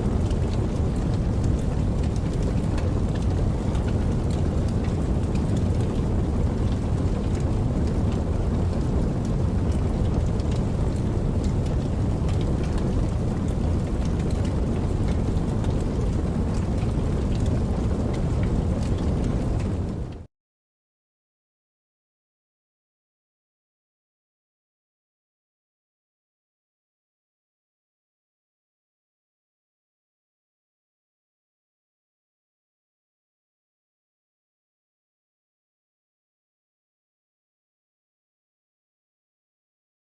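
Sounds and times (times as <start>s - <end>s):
campfire crackling: 0.0s - 20.3s.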